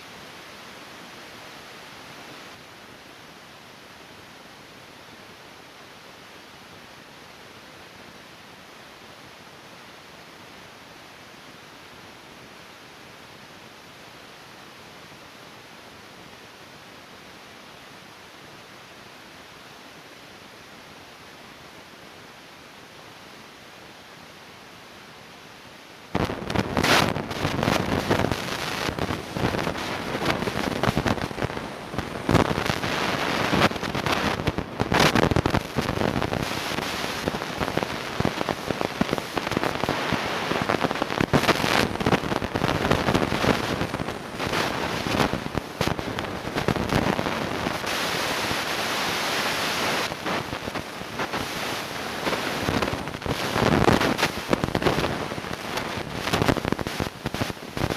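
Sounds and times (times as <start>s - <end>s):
heavy rain and wind on microphone: 0.0s - 57.9s
crackling hits: 26.2s - 48.6s.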